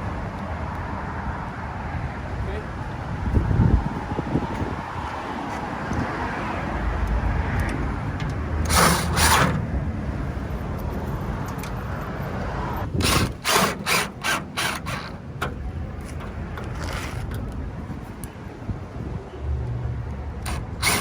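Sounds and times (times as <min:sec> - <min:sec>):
hand tool ratcheting strokes: 0:07.6 - 0:09.6, 0:12.9 - 0:17.4, 0:20.5 - 0:21.0.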